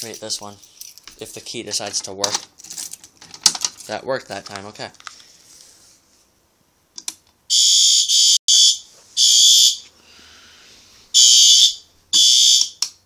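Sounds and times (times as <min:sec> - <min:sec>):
fire alarm horn blasts: 0:07.5 - 0:09.8, 0:11.2 - 0:12.8.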